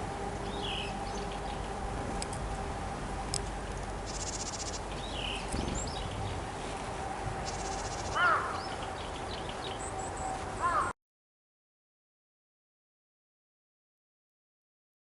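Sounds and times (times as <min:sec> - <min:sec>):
lower-pitched bird call: 0:00.4 - 0:01.7, 0:07.4 - 0:11.0
varied tits chirping: 0:00.4 - 0:01.7, 0:04.0 - 0:06.6, 0:07.4 - 0:10.7
harsh buzzy bird calls: 0:04.1 - 0:06.3, 0:07.4 - 0:09.9.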